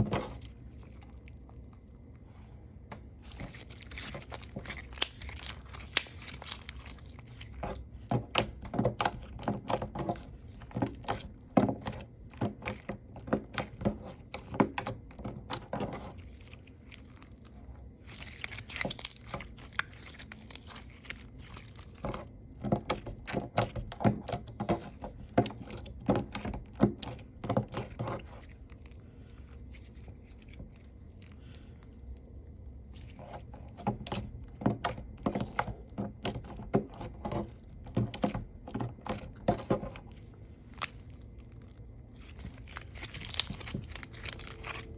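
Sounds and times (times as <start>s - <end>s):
slime squished with sticky clicks: 2.9s - 29.0s.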